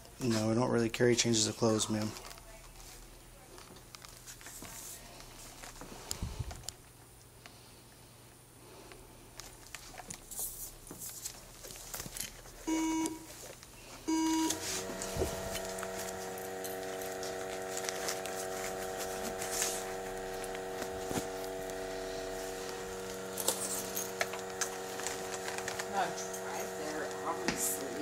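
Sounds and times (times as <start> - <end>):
steady electronic hum: 12.5 - 28.0
short electronic beeps: 12.7 - 13.3, 14.1 - 14.6.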